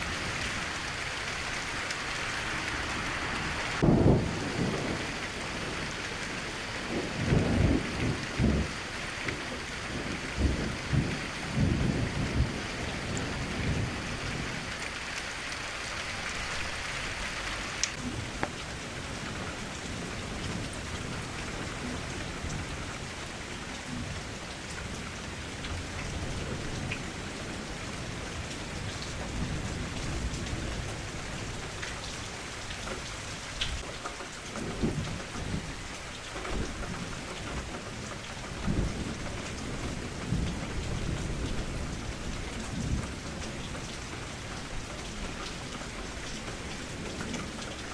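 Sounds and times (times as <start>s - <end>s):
steady rain falling: 0.0s - 47.9s
thunder rumbling: 3.5s - 14.8s, 36.4s - 45.8s.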